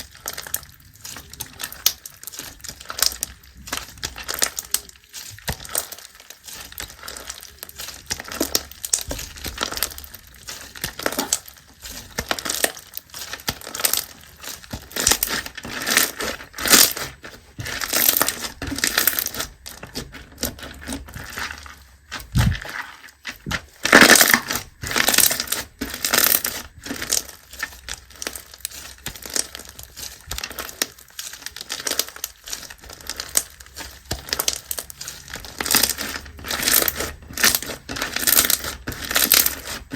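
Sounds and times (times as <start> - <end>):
slime crackling and crunching: 0.0 - 39.9.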